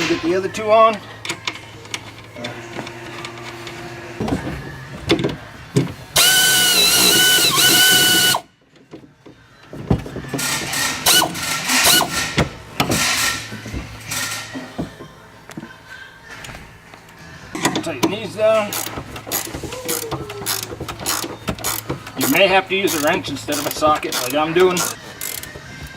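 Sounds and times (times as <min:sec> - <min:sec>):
cordless power tool whining: 0:06.2 - 0:08.5, 0:11.0 - 0:12.2
metal tools knocking and clinking: 0:17.6 - 0:25.4.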